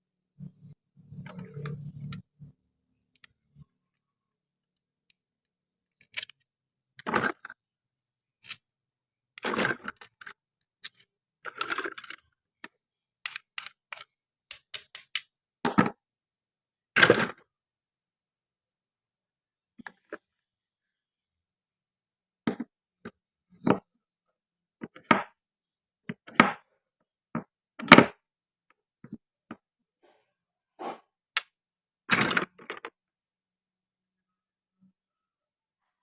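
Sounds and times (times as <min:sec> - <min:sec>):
toy kitchen pieces clicking: 0:01.2 - 0:02.4, 0:03.1 - 0:04.0, 0:05.8 - 0:07.6, 0:08.4 - 0:08.7, 0:09.4 - 0:15.8, 0:17.0 - 0:17.4, 0:32.1 - 0:33.0.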